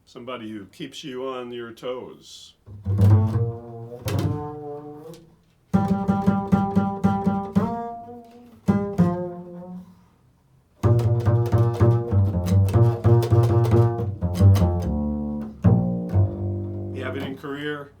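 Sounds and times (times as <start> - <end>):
solo string instrument music: 2.7 - 10.1, 10.8 - 17.4.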